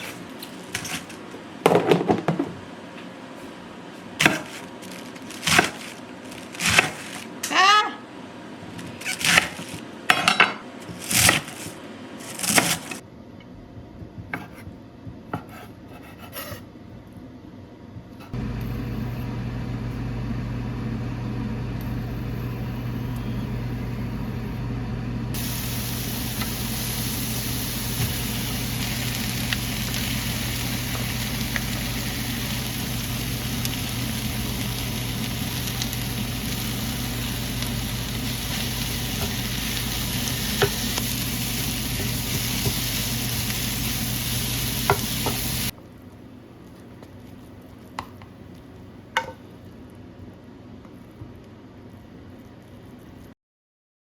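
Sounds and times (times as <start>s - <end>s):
low hum: 18.0s - 45.7s
food sizzling in a frying pan: 25.3s - 45.8s.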